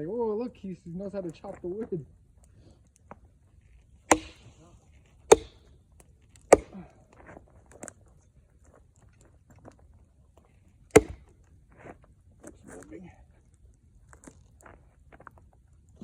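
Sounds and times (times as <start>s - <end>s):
axe chopping wood: 4.1s - 4.6s, 5.3s - 5.7s, 6.4s - 6.9s, 11.0s - 11.3s.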